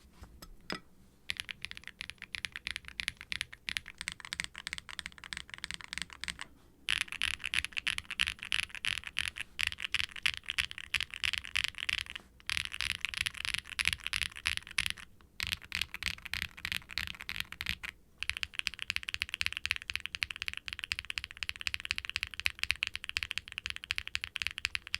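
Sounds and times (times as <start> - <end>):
fast mechanical keyboard typing: 1.3 - 24.9.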